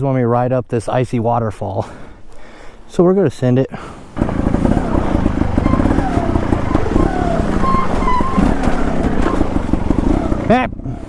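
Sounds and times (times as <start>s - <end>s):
motorcycle engine under throttle: 4.2s - 11.0s.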